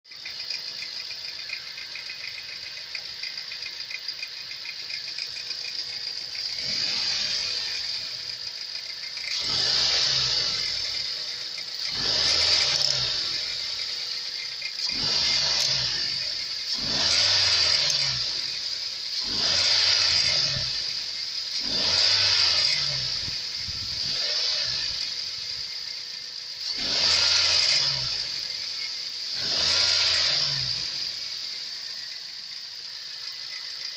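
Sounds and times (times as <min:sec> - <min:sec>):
car engine idling: 0:00.1 - 0:33.9
engine revving in short blips: 0:05.2 - 0:25.8, 0:26.6 - 0:31.5.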